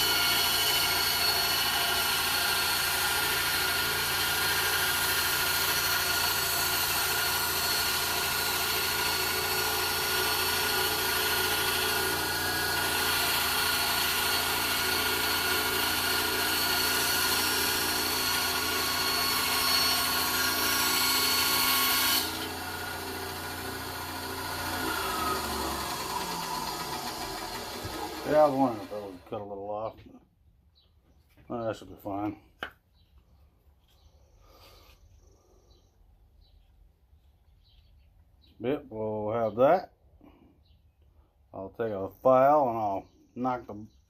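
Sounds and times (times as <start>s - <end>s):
saw motor humming: 0.0s - 29.4s
power saw cutting wood: 0.0s - 29.5s.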